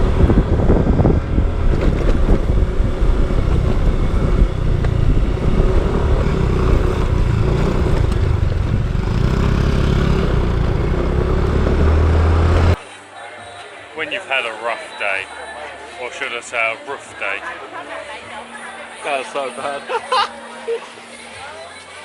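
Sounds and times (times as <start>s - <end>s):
wind buffeting microphone: 0.0s - 12.7s
motorbike engine running: 0.0s - 12.8s.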